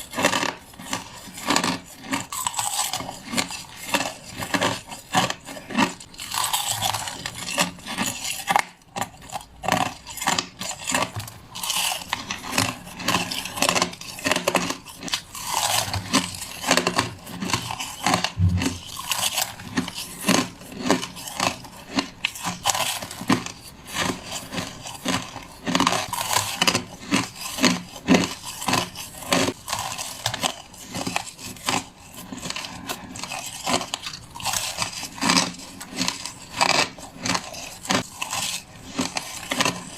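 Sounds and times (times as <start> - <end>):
crushed ice crunching: 0.0 - 39.9.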